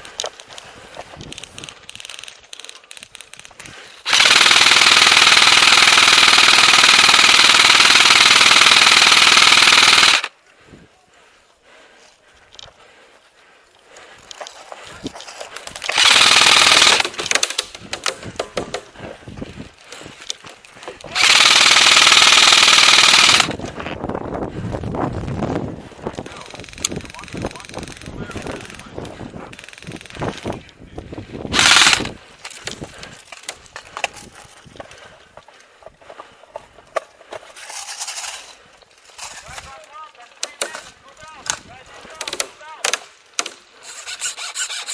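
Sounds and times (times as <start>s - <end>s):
sharp clicks and snaps: 0.1s - 4.3s
sharp clicks of shots: 1.4s - 10.3s, 15.7s - 18.9s, 21.1s - 23.6s, 26.4s - 28.9s, 31.5s - 32.8s
airsoft gun full-auto burst: 4.0s - 10.3s, 15.9s - 17.8s, 21.1s - 23.6s, 31.5s - 32.1s, 43.9s - 44.9s.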